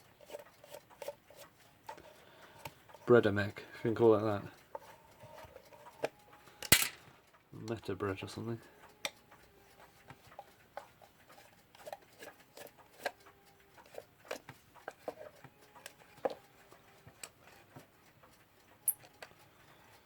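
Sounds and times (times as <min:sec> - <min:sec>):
hand tool clicking and tapping: 0:13.8 - 0:19.4.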